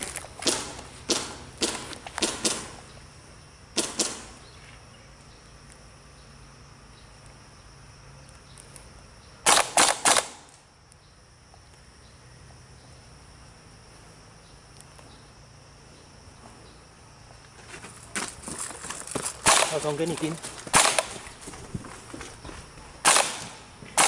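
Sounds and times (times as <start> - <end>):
airsoft gun shots: 0.4 - 2.8, 3.8 - 4.4, 9.4 - 10.5, 19.4 - 20.1, 20.7 - 21.2, 23.0 - 24.0.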